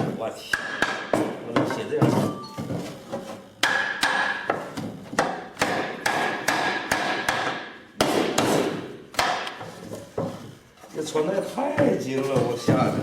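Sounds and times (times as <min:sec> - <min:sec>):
hammer knocking on wooden joint: 0:03.6 - 0:10.4.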